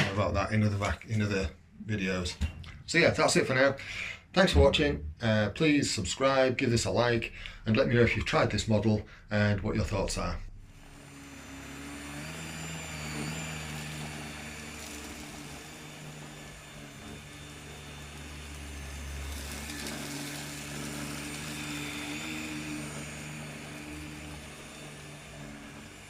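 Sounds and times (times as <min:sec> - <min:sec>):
motor running: 0:10.4 - 0:26.0.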